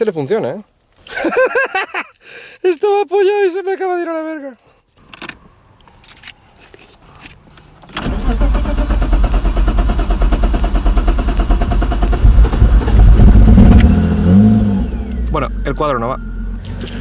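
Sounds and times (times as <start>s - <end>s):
engine cranking by starter: 7.8s - 17.0s.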